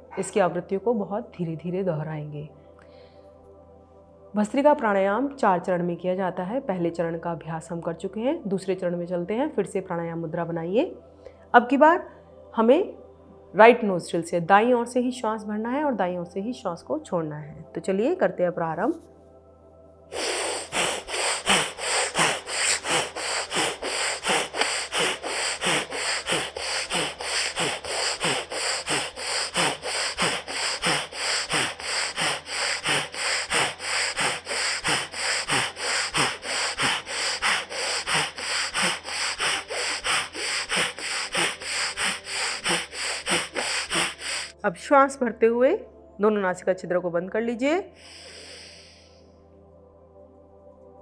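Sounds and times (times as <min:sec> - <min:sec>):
woman breathing forcefully through nose: 0:02.8 - 0:03.4, 0:20.1 - 0:44.6, 0:48.0 - 0:49.3.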